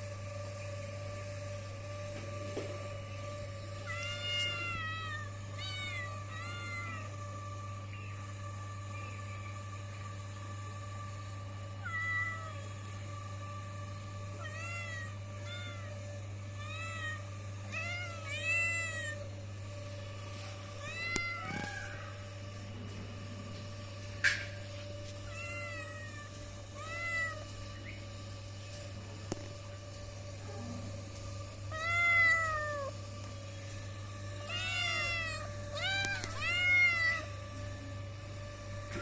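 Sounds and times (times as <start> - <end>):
steady low hum: 0.0 - 39.0
kitten meowing: 3.9 - 7.1, 20.8 - 22.1, 25.3 - 27.5, 34.5 - 37.3.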